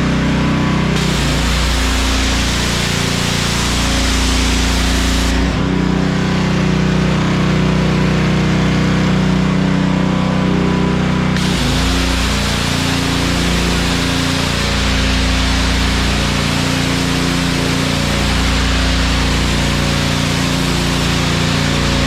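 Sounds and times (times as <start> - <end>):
small engine droning: 0.0 - 22.0
high-pressure water jet hissing: 0.9 - 5.8, 11.4 - 22.0.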